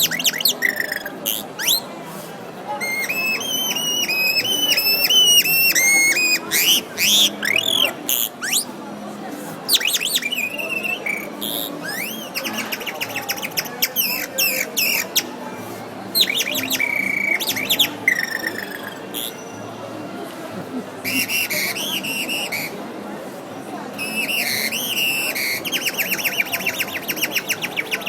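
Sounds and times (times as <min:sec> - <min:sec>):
man whistling bird imitations: 0:21.1 - 0:22.7.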